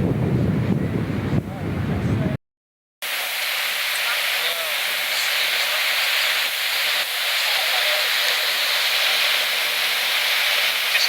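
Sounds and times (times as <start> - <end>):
wind blowing across microphone: 0.0 - 2.4.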